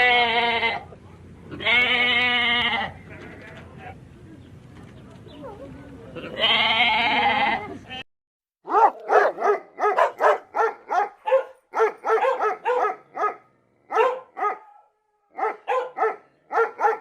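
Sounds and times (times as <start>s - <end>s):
dog yapping: 8.7s - 17.0s.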